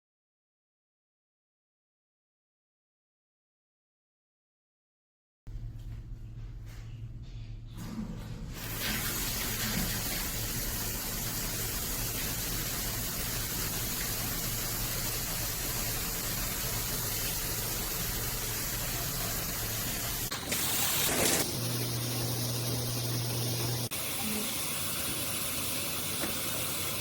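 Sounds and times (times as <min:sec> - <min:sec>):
water spraying from shower head: 0:08.6 - 0:27.0.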